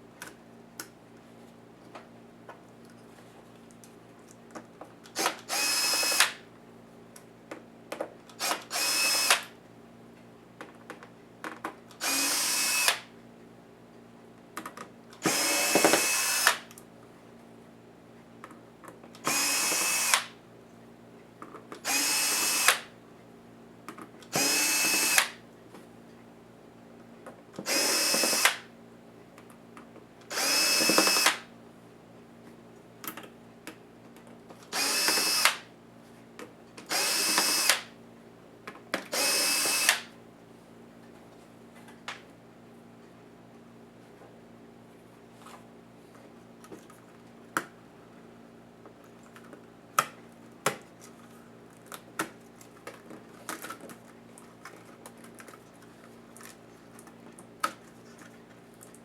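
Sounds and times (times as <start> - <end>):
electric screwdriver whining: 5.2 - 6.4, 8.4 - 9.4, 12.0 - 13.0, 15.2 - 16.6, 19.2 - 20.3, 21.8 - 22.9, 24.3 - 25.4, 27.7 - 28.6, 30.3 - 31.4, 34.7 - 35.6, 36.9 - 37.9, 39.1 - 40.1.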